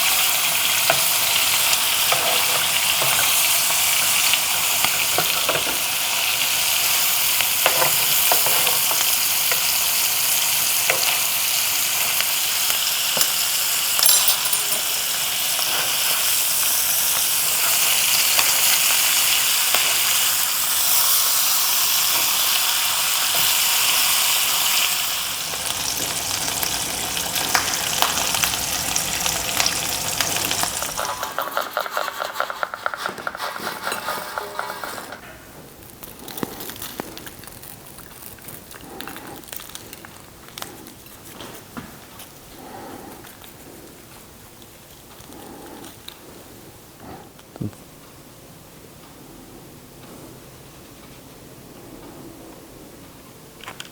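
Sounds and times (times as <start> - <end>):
food sizzling in a frying pan: 0.0 - 31.8.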